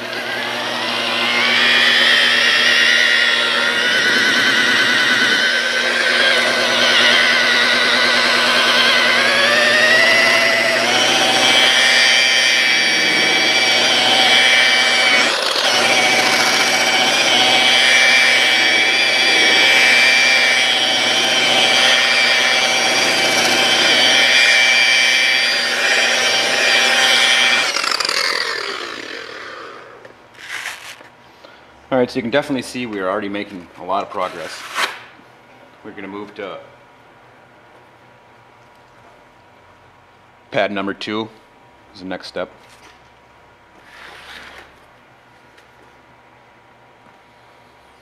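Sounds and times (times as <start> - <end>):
polishing buffer whining: 0.0 - 30.2.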